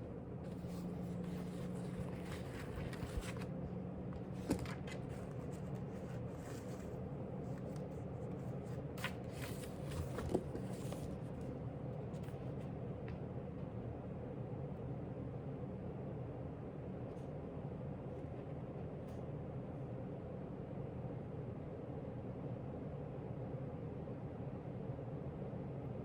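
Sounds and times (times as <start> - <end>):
low room hum: 0.0 - 26.0
paper rustling: 0.5 - 3.5, 4.2 - 11.5.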